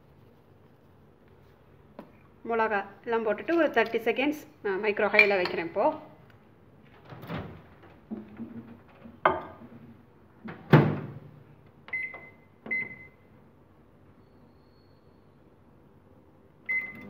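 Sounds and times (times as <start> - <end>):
dish knocks and clunks: 8.0 - 9.7
microwave keypad beeps: 11.9 - 13.2, 16.6 - 17.0.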